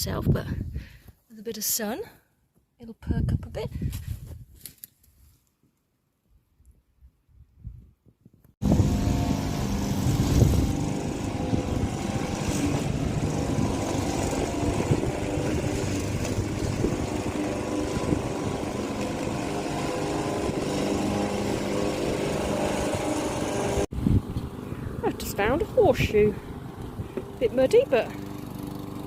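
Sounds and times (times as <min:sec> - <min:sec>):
lawnmower engine cutting grass: 0:08.6 - 0:29.0.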